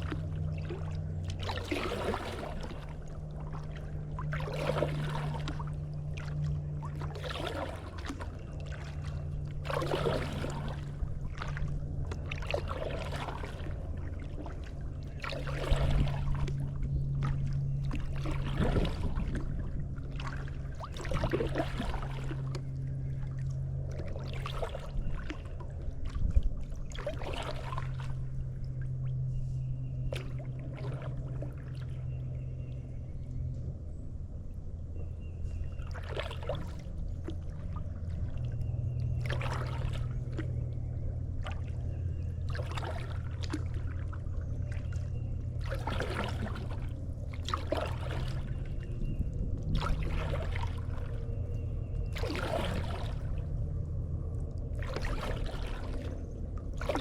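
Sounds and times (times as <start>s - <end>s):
paddle splashing water: 0.0s - 32.8s, 35.5s - 57.0s
steady low hum: 0.0s - 57.0s.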